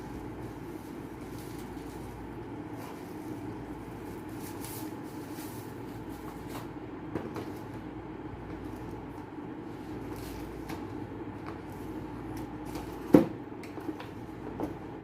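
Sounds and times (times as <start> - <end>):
steady background hum: 0.0 - 15.0
packaging rustling: 0.1 - 6.6.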